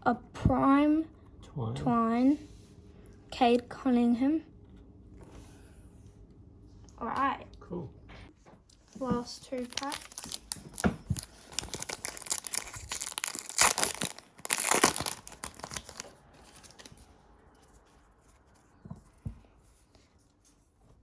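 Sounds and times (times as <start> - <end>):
wrapper tearing and crinkling: 9.5 - 17.0.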